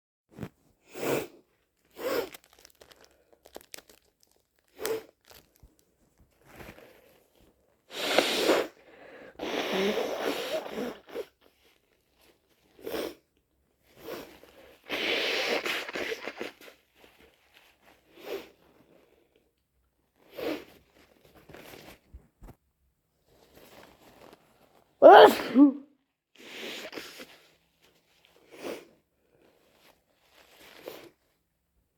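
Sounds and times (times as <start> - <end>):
nose blowing into tissue: 0.8 - 2.4, 7.9 - 11.4, 12.7 - 13.2, 13.9 - 16.8, 18.1 - 19.0, 20.2 - 20.8, 25.0 - 25.8, 26.4 - 27.4, 28.4 - 29.0, 30.5 - 31.2
wet sneezes: 7.9 - 8.8, 9.4 - 11.3, 14.9 - 16.6, 25.0 - 25.9, 26.5 - 27.3
person sniffling: 7.9 - 11.3, 25.0 - 25.8.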